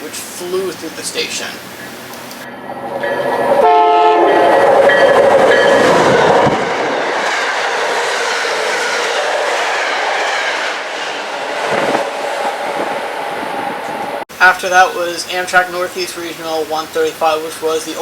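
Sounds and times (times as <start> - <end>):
train cars rushing past: 0.0 - 18.0
train horn chord: 3.6 - 6.3.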